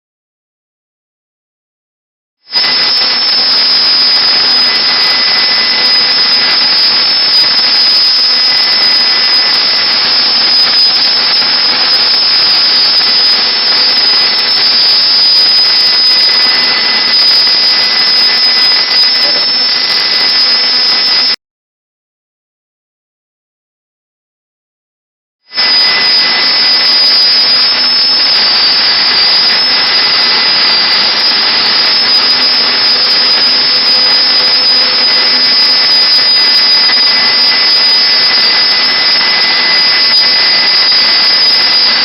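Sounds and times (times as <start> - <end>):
router spindle cutting wood: 2.5 - 21.4, 25.5 - 42.0.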